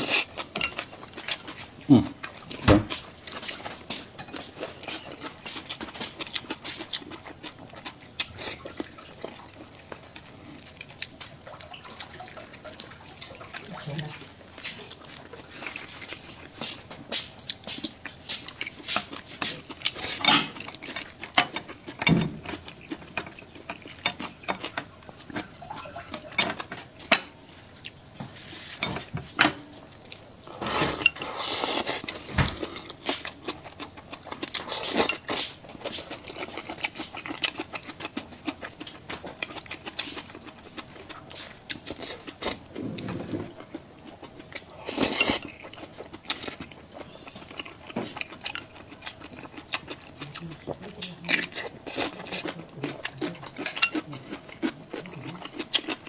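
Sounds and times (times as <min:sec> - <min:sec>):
chewing: 0:00.0 - 0:26.9, 0:29.8 - 0:56.0
utensils clinking on plates: 0:20.0 - 0:24.8
slurping soup: 0:30.5 - 0:32.3, 0:41.3 - 0:43.8, 0:44.6 - 0:46.6.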